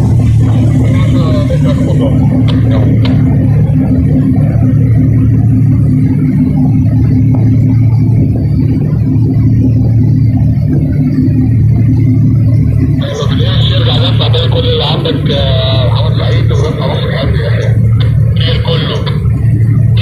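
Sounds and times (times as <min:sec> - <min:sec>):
diesel engines humming: 0:00.0 - 0:20.0.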